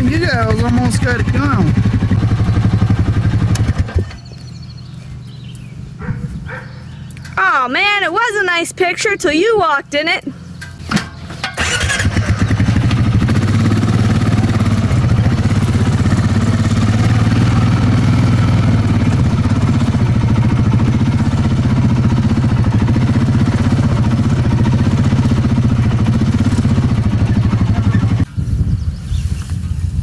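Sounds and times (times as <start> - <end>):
small engine idling: 0.0 - 5.7, 10.3 - 28.3.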